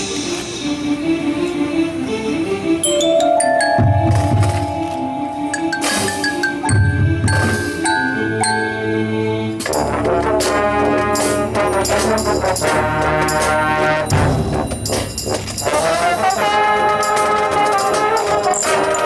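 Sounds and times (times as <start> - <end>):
mallet percussion: 2.8 - 9.9
brass notes: 2.8 - 19.0.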